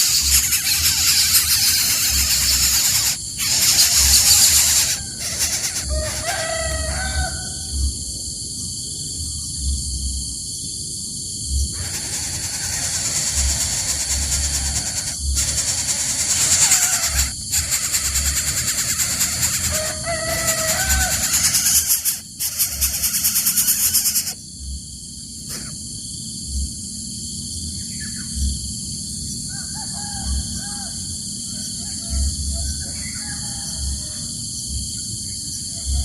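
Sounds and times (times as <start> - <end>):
gliding bird calls: 0.0 - 7.4, 11.7 - 24.4
insects buzzing: 0.0 - 36.0.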